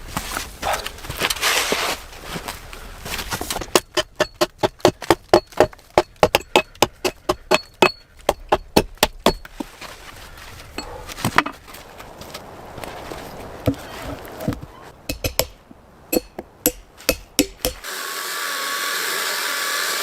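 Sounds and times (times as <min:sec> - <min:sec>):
chopping on wood: 0:03.6 - 0:09.6.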